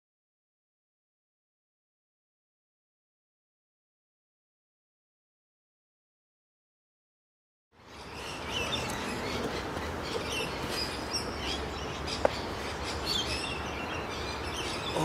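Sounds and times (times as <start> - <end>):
low background noise: 7.8 - 15.0
small birds chirping: 7.8 - 15.0.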